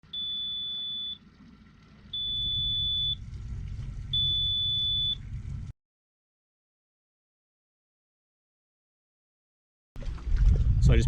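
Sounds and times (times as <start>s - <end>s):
high-pitched warning buzzer beeps: 0.1s - 1.2s, 2.1s - 3.2s, 4.2s - 5.2s
low rumble: 2.1s - 5.7s, 10.0s - 11.0s.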